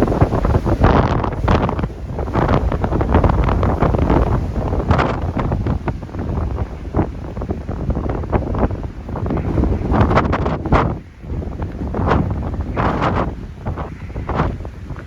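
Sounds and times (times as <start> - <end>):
gusty wind buffeting microphone: 0.0 - 15.0.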